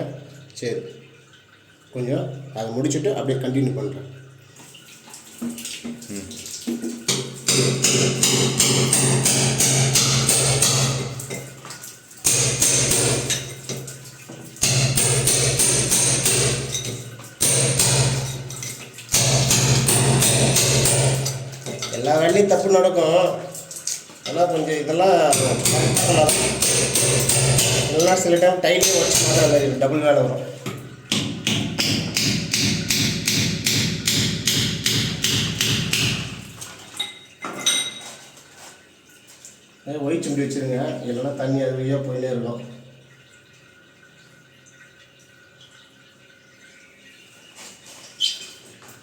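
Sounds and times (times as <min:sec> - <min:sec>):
hammer drill chiselling masonry: 0:19.2 - 0:21.4, 0:25.3 - 0:28.2, 0:28.8 - 0:29.7
rapid even tapping: 0:25.3 - 0:28.2, 0:28.8 - 0:29.6.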